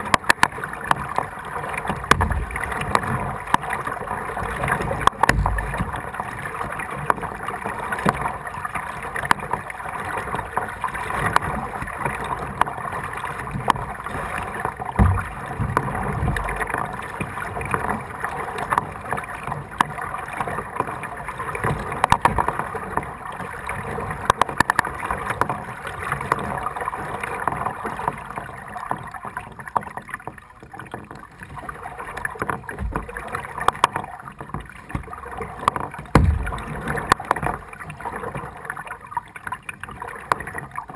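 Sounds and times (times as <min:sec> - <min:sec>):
kayak paddle splashing: 0:00.0 - 0:40.9
water sloshing against hull: 0:00.0 - 0:40.9
low knocks: 0:02.1 - 0:03.1, 0:05.0 - 0:06.3, 0:15.0 - 0:16.7, 0:32.8 - 0:33.2, 0:36.1 - 0:37.5.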